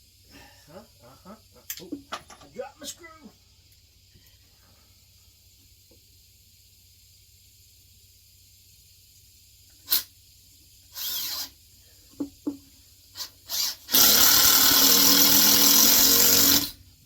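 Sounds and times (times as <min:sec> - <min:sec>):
power drill driving screw: 0:09.9 - 0:10.1, 0:10.9 - 0:11.6, 0:13.2 - 0:16.8.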